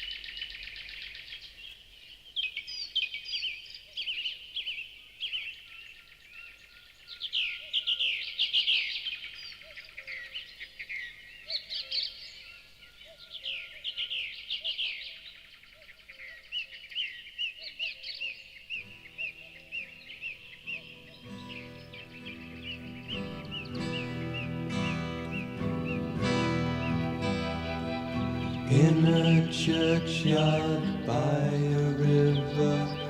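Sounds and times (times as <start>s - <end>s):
small birds singing: 0.0s - 33.0s
music: 20.8s - 33.0s.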